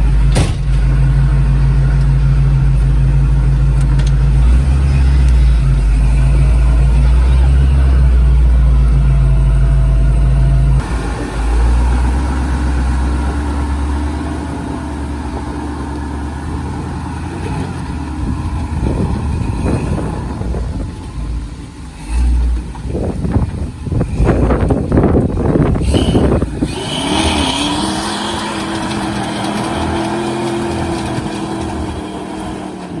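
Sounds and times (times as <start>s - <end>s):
pickup truck engine revving: 0.0s - 33.0s.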